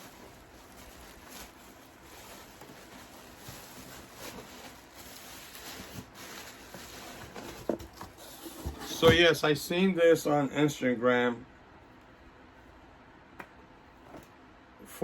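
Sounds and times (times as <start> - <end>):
faint rustling and handling: 0.0 - 9.4.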